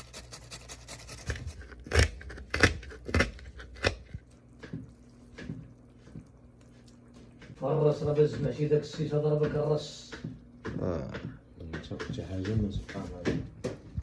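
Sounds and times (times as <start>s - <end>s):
crab shells snapping: 1.6s - 4.2s.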